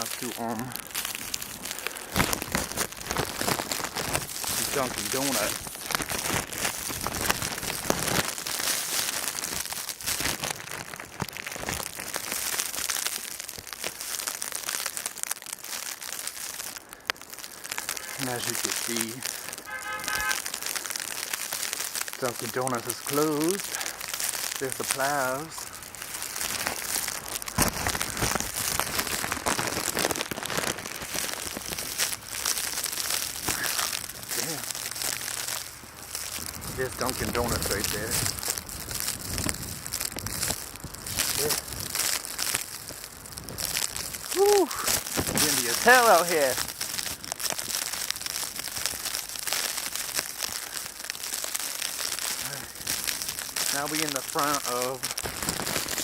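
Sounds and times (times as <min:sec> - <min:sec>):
footsteps crunching in snow: 0:02.2 - 0:10.5, 0:23.1 - 0:38.5.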